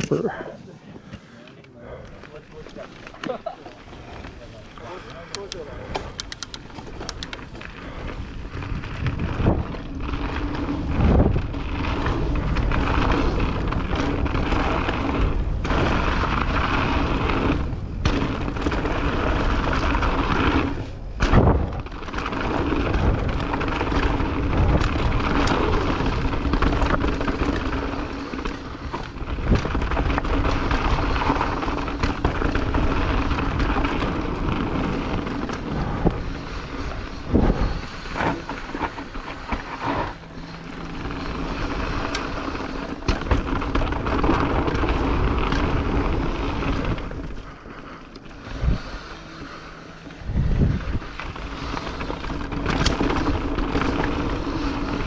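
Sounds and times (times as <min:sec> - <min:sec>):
bike rolling and rattling: 0:00.0 - 0:55.0
wind rumble on microphone: 0:04.1 - 0:55.0
bike thumping over bumps: 0:08.6 - 0:47.7.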